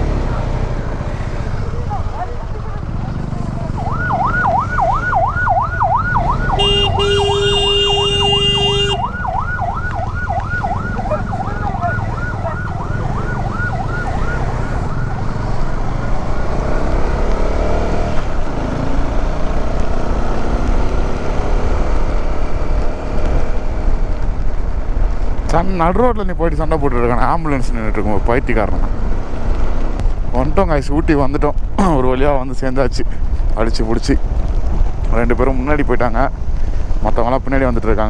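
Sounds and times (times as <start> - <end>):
road and engine rumble: 0.0 - 38.0
ambulance siren yelping: 3.6 - 17.2
vehicle horn blaring: 6.5 - 9.1.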